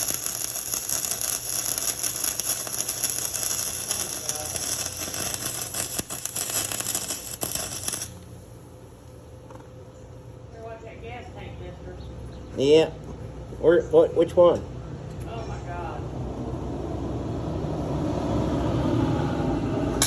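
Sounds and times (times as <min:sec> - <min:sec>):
welder arc crackling: 0:00.0 - 0:09.2.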